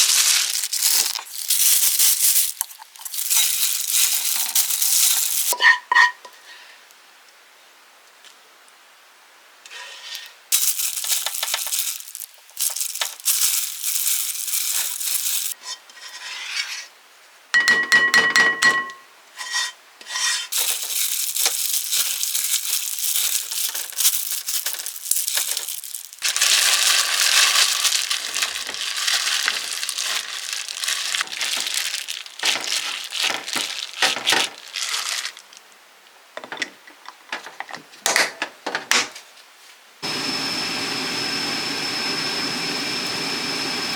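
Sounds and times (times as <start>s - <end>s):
utensils scraping and clattering: 0.5s - 6.2s, 9.7s - 16.9s, 19.4s - 34.7s.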